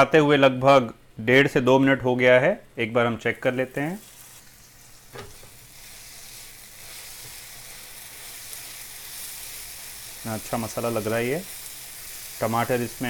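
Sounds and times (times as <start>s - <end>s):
food sizzling in oil: 3.4s - 13.0s.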